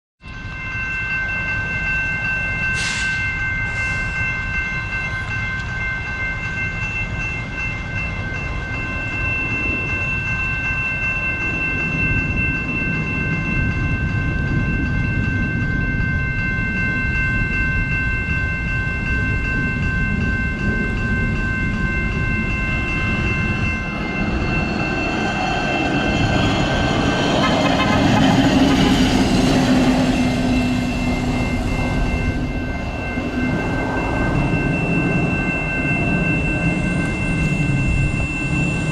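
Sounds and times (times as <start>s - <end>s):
train horn chord: 27.4s - 28.6s.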